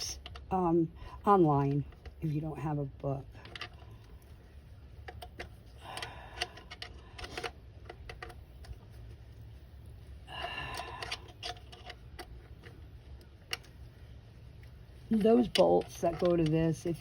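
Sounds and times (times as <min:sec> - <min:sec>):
tool handling clicks and knocks: 0:03.2 - 0:04.4, 0:05.0 - 0:08.9, 0:10.7 - 0:13.8, 0:14.6 - 0:17.0.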